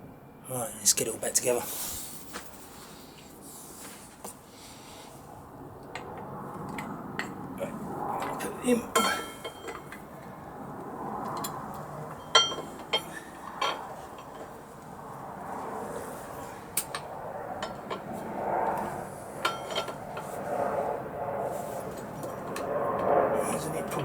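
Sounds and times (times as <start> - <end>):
metallic tool clinks and knocks: 8.9 - 10.0, 11.4 - 14.4.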